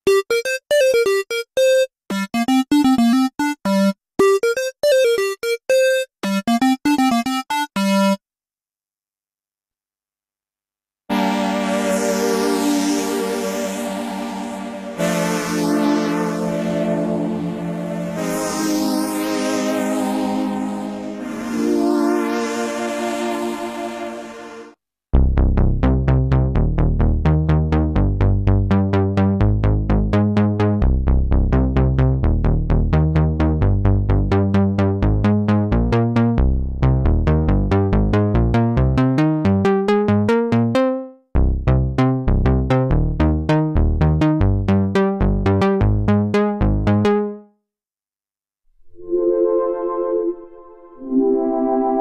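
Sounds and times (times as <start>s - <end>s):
plucky synthesizer bass pattern: 0.0s - 8.2s, 25.2s - 47.4s.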